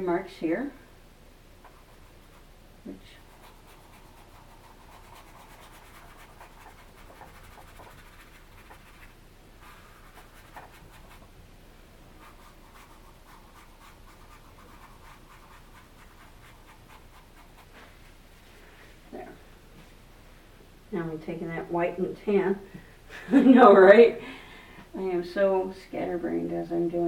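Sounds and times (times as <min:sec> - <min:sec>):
drawing tool scratching paper: 0:03.2 - 0:11.3, 0:12.2 - 0:17.8.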